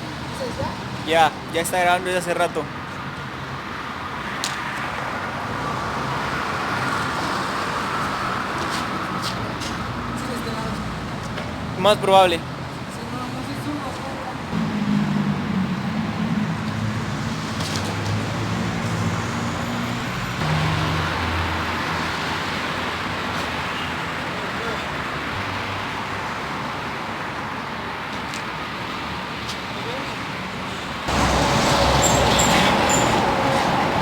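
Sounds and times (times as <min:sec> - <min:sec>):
road traffic noise: 0:00.0 - 0:34.0
vehicle passing by: 0:14.5 - 0:26.4, 0:31.1 - 0:34.0.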